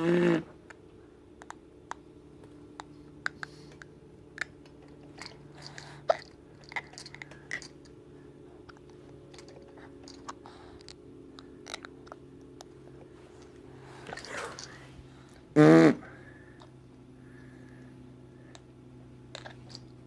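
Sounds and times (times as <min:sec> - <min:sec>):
baby grinding teeth: 0:05.1 - 0:07.8, 0:14.0 - 0:14.8, 0:19.3 - 0:19.9.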